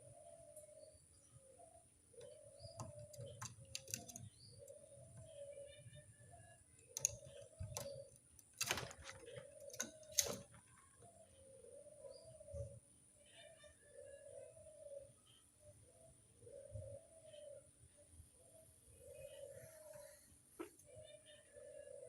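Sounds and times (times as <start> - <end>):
dove cooing: 0.0 - 22.0
sharp clicks and knocks: 2.6 - 4.3, 7.0 - 10.7.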